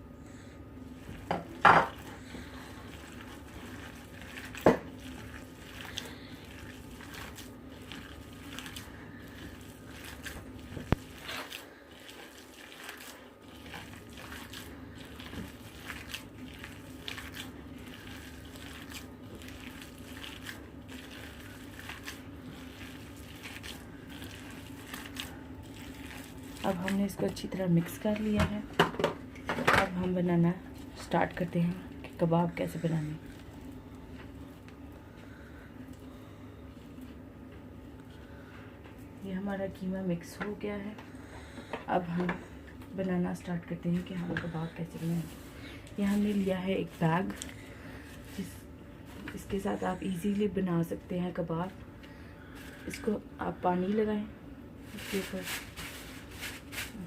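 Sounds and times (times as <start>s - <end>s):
hands squelching mince: 1.9s - 28.0s.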